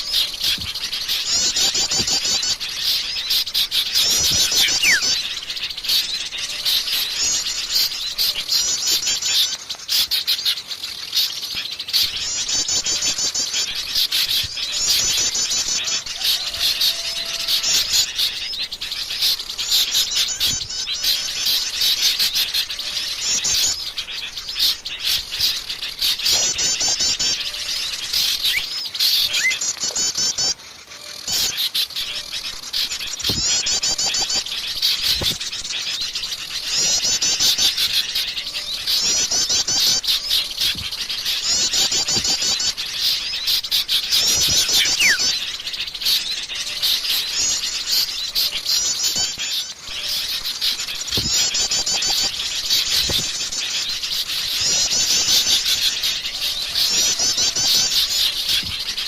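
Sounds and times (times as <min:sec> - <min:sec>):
birds singing trills: 0:00.0 - 0:59.0.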